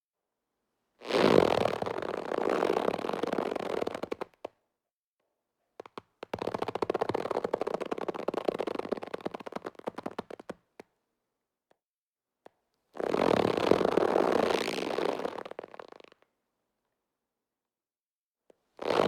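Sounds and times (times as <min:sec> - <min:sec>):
rubber band stretching and creaking: 0:06.2 - 0:10.6, 0:13.0 - 0:16.2, 0:18.8 - 0:19.0.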